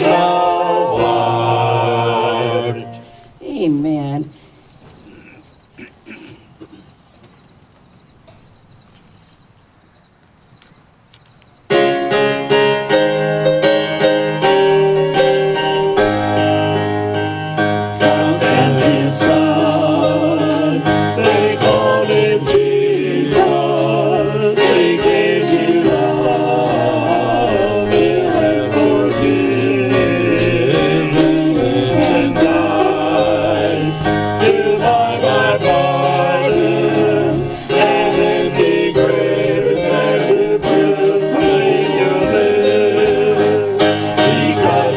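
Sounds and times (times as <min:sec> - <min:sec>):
keyboard: 0:00.0 - 0:44.9
person singing: 0:18.0 - 0:44.9.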